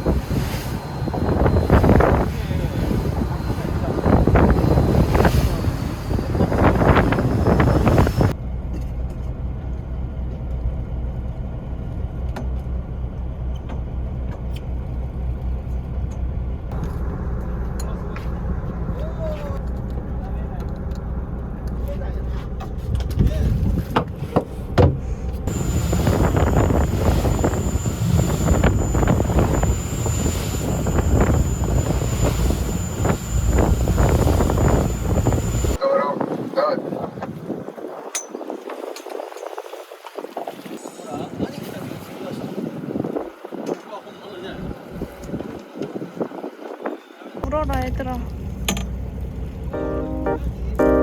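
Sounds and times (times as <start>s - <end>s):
wind buffeting microphone: 0.0s - 8.4s, 25.4s - 43.8s
vehicle engine rumbling: 0.0s - 35.8s.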